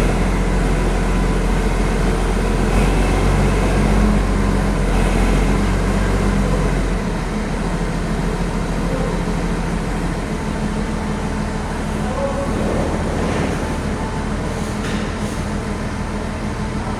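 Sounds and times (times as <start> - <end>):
heavy vehicle engine droning: 0.0 - 16.9.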